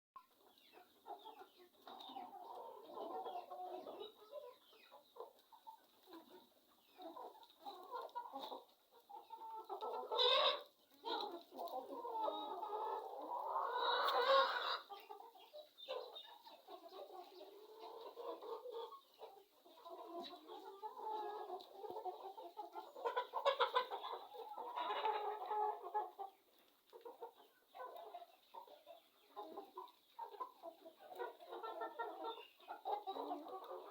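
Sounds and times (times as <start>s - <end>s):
chickens clucking: 0.2s - 33.9s.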